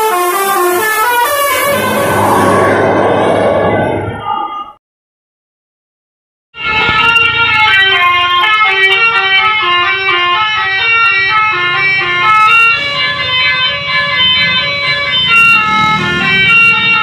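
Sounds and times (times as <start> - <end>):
musical air horn melody: 0.0 - 3.0, 6.6 - 17.0
bus engine rumble: 0.0 - 4.6.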